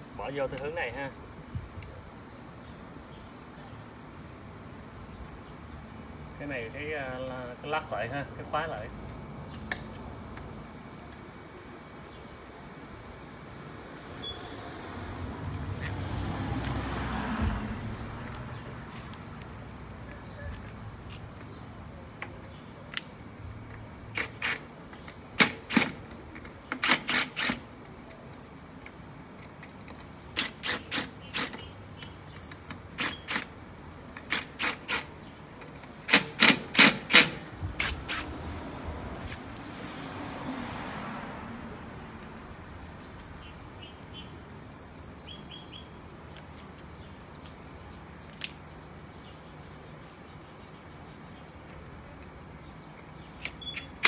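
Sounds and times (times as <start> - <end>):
faint bird chirps: 14.2 - 14.5, 42.4 - 46.0.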